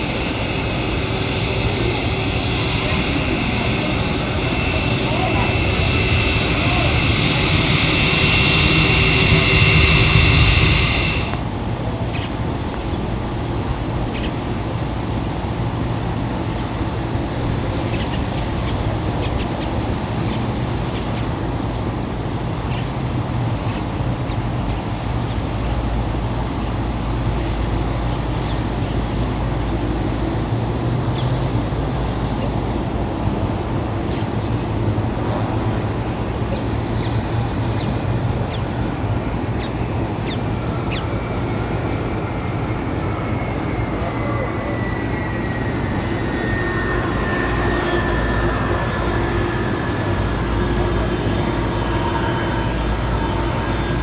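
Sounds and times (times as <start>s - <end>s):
jet engines rumbling: 0.0s - 54.0s.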